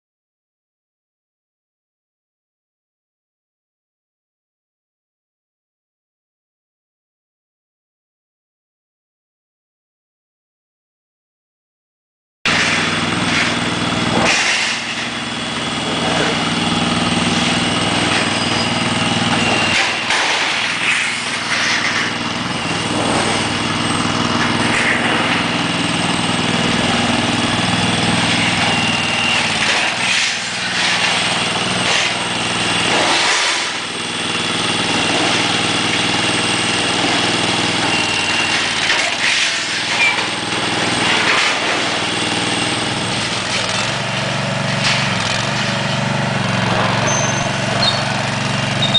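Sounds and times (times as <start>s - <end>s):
motor drone: 12.5s - 48.9s.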